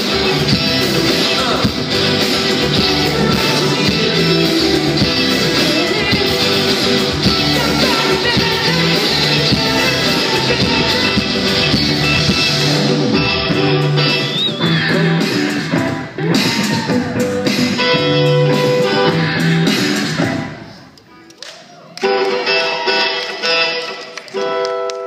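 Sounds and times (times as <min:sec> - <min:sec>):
person singing: 0:00.0 - 0:20.4
live band playing rock-pop song: 0:00.0 - 0:20.6
electric guitar: 0:00.0 - 0:20.7, 0:22.0 - 0:25.0.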